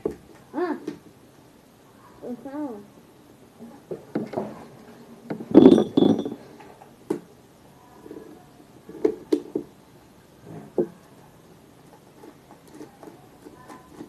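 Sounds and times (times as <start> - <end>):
small hard objects clinking: 5.5 - 6.4.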